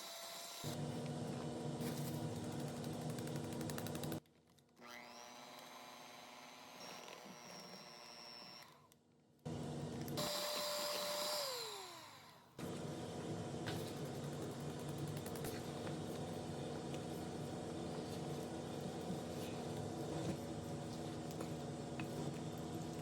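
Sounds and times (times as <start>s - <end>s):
electric mixer motor running: 9.5s - 23.0s.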